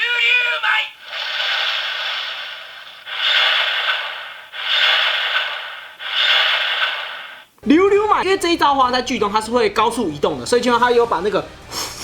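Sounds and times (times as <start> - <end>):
toy sword swing whooshes: 1.1 - 7.4.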